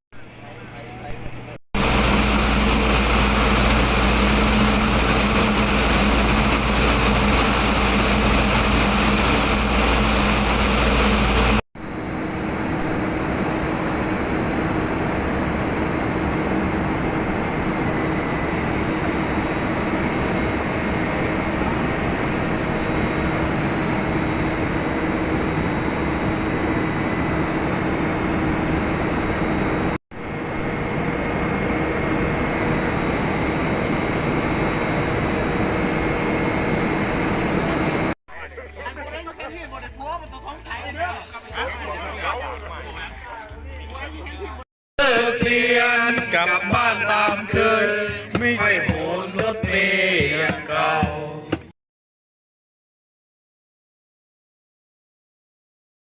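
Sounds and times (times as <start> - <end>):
loud machinery hum: 1.8 - 38.2.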